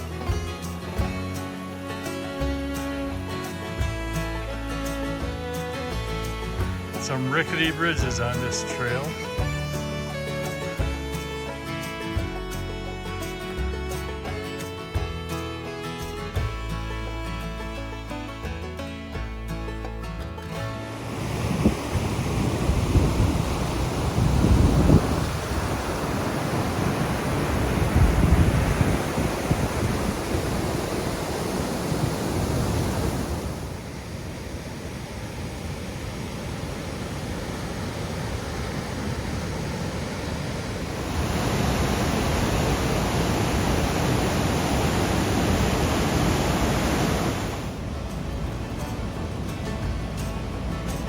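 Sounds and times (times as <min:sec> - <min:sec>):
river water rushing through rapids: 0:00.0 - 0:16.0, 0:20.9 - 0:51.0.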